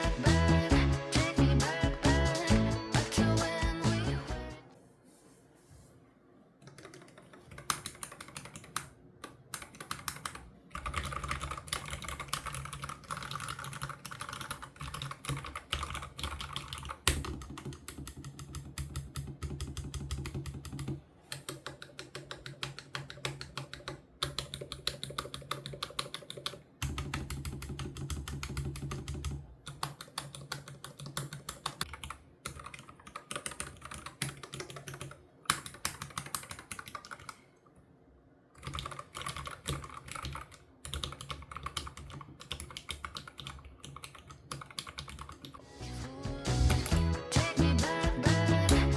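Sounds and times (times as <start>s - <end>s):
mechanical keyboard typing: 6.6s - 37.4s, 38.6s - 45.6s.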